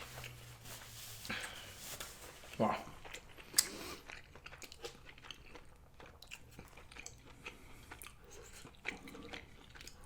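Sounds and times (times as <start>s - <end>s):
person chewing food: 2.4s - 10.0s.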